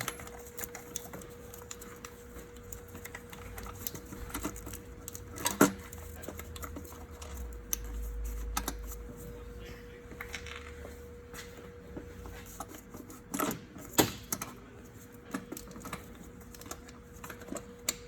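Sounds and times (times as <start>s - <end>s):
clinks of engine parts handled: 10.1s - 10.9s.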